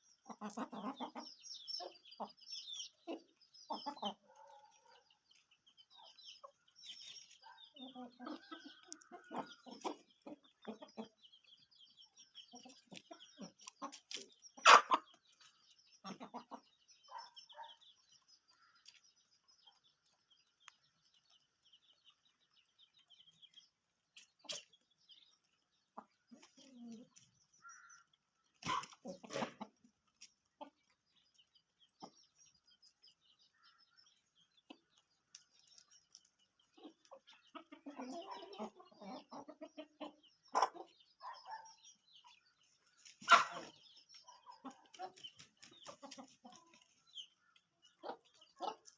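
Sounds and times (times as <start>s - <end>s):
chickens peeping and clucking: 0.0s - 48.9s.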